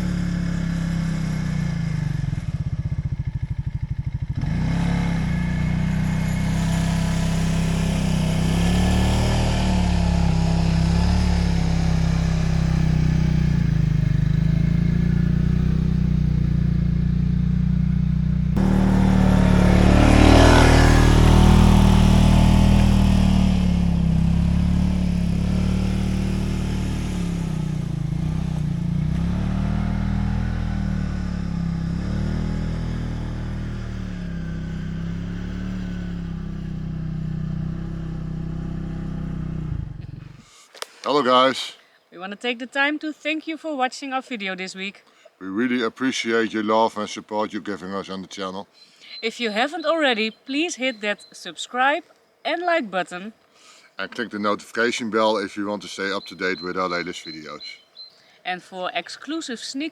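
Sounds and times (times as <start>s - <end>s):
farm machine engine running: 3.9s - 40.4s, 55.5s - 57.4s.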